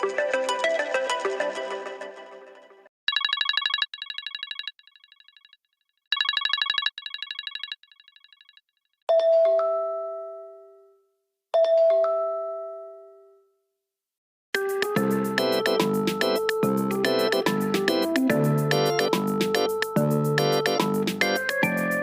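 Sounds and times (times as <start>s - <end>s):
keyboard ringtone music: 3.1s - 5.4s, 6.2s - 8.5s, 9.1s - 11.0s, 11.6s - 13.3s, 14.6s - 22.0s.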